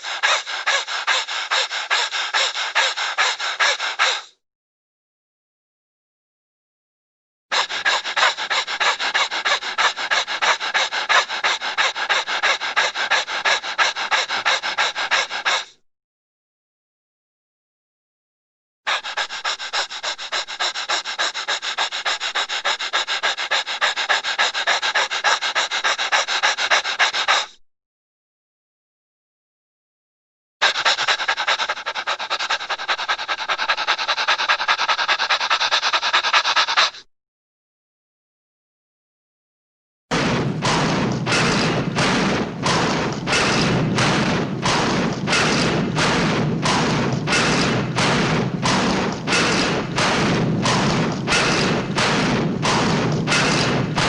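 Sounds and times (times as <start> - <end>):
rapid rhythmic panting: 0.0 - 4.4, 7.5 - 15.8, 18.9 - 27.6, 30.6 - 37.1, 40.1 - 54.0
rapid scraping strokes: 7.6 - 15.6, 40.2 - 54.0.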